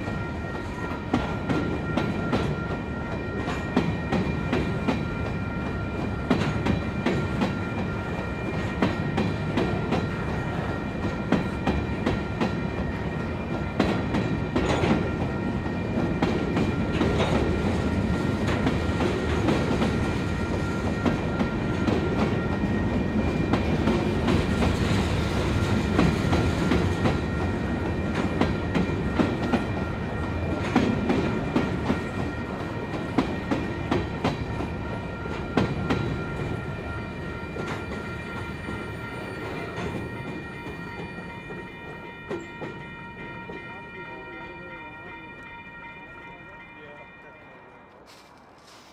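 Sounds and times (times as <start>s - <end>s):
train wheels clicking on rail joints: 0.0s - 42.9s, 47.8s - 48.9s
train rumble: 0.0s - 48.9s.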